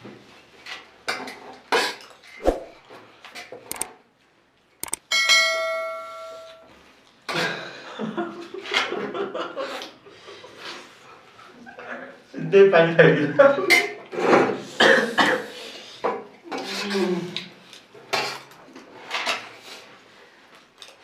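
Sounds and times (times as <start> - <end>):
bell ding: 5.1 - 6.7.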